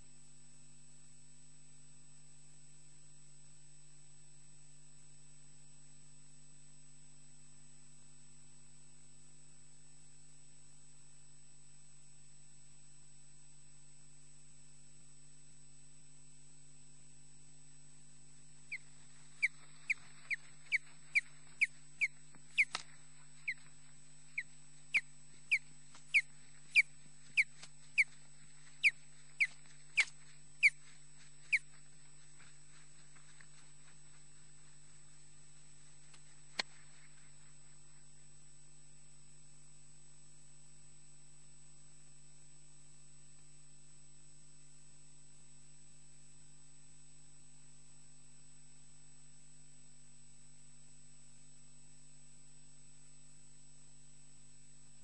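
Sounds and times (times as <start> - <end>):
electrical hum: 17.9 - 39.1
bird chirping: 18.7 - 34.0.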